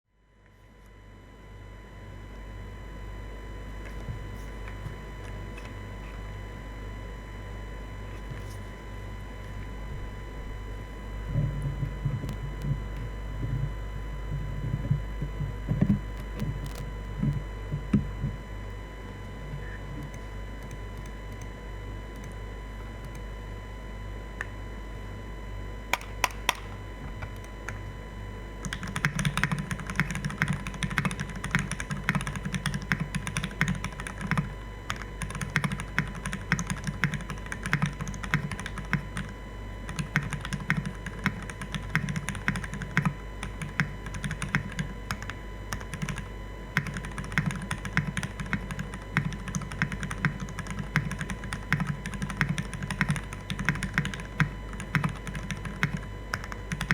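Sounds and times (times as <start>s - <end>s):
low electrical hum: 0.1s - 56.9s
mechanical keyboard typing: 25.9s - 27.8s, 28.6s - 39.3s, 39.9s - 56.9s.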